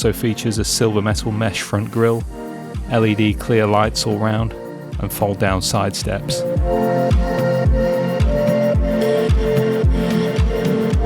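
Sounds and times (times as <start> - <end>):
bass drum beat: 2.2 - 11.0.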